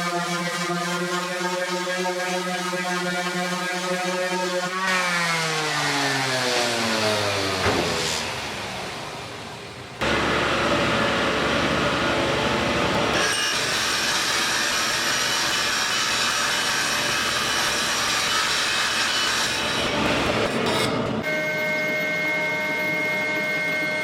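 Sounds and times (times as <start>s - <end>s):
higher whine: 7.4s - 13.2s, 21.1s - 24.0s
power tool rasping wood: 12.8s - 21.0s.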